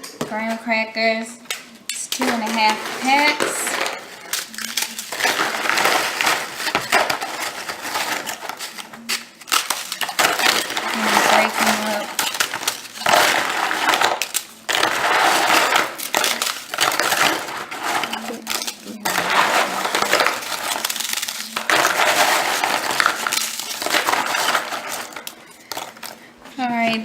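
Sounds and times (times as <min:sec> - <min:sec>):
crackers crackling and crunching: 0:01.3 - 0:27.0.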